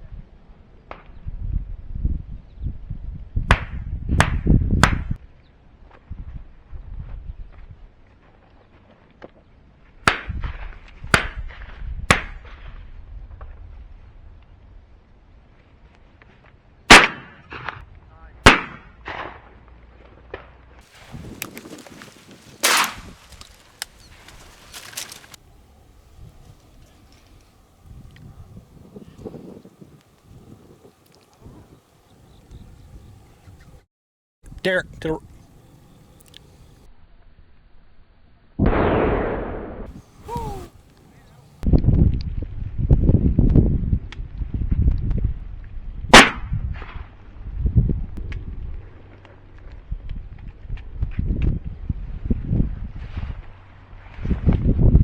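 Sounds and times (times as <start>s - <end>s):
shotgun shot: 16.9s - 17.8s, 18.4s - 19.5s, 22.6s - 23.4s, 38.6s - 40.7s, 46.1s - 47.0s
shotgun shots: 16.9s - 17.8s, 18.4s - 19.4s, 22.6s - 23.3s
faint sharp clicks: 36.2s - 36.5s.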